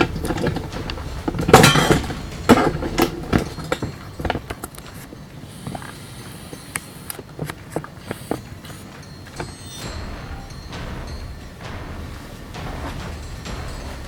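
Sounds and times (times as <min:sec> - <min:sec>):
rustling of cables: 0:00.0 - 0:09.9.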